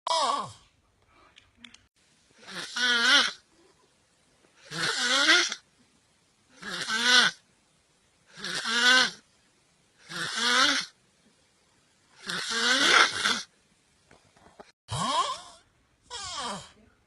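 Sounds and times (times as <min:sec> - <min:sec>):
person snoring: 0:02.4 - 0:03.4, 0:04.6 - 0:05.6, 0:06.6 - 0:07.4, 0:08.3 - 0:09.2, 0:10.0 - 0:11.0, 0:12.2 - 0:13.5, 0:14.9 - 0:16.8.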